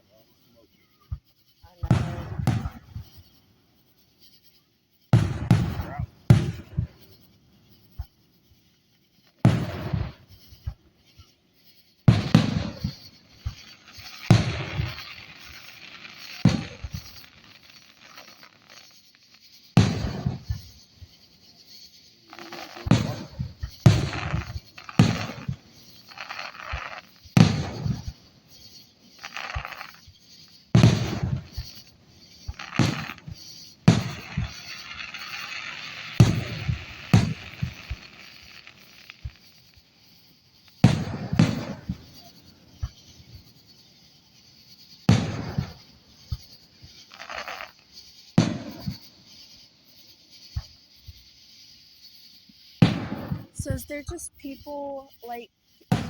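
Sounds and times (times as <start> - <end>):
fireworks crackling: 0.0 - 56.0
fireworks booming: 1.0 - 3.4, 5.0 - 56.0.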